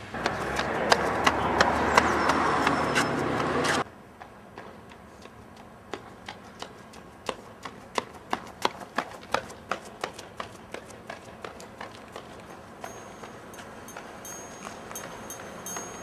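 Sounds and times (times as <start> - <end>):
footsteps on hard surface: 11.2 - 16.0.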